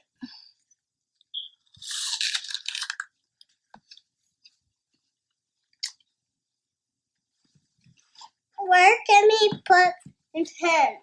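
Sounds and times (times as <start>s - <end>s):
apple crunch: 1.7s - 3.1s.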